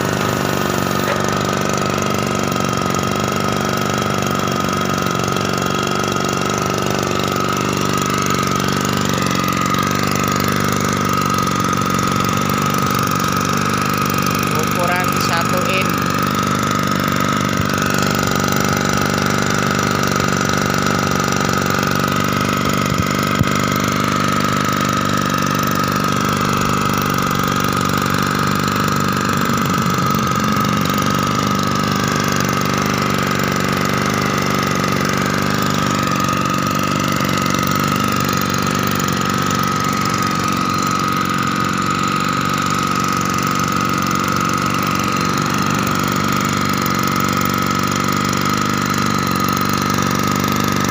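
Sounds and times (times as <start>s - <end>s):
small two-stroke water pump engine: 0.0s - 50.9s
high steady whine: 14.5s - 16.4s.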